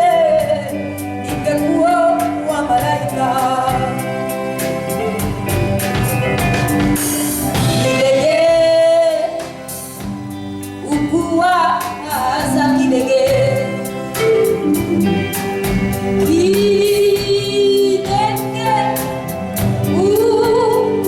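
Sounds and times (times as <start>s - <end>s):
person singing: 0.0s - 6.4s, 10.8s - 21.0s
steady drum beat: 0.0s - 21.0s.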